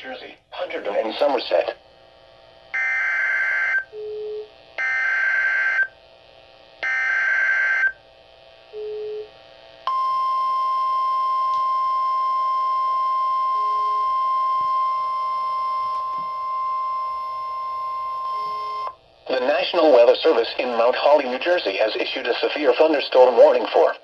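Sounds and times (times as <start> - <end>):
steady attention tone: 9.9 - 23.6.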